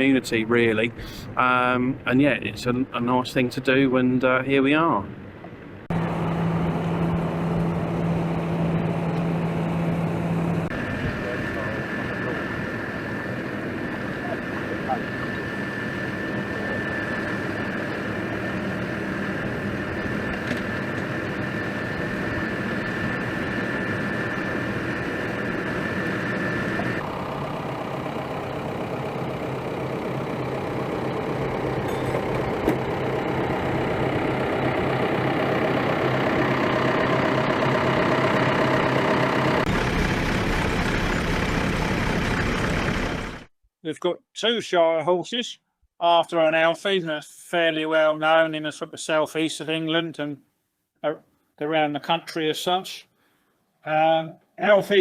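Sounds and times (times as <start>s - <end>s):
high whine: 0.0s - 43.5s
vehicle engines running: 4.6s - 43.5s.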